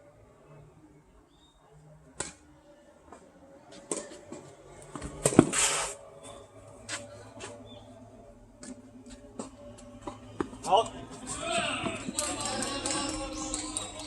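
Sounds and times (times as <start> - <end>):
tennis ball struck by rackets: 2.2 - 2.4, 4.9 - 5.8, 9.4 - 10.7
shoes scuffing on court: 6.8 - 7.6.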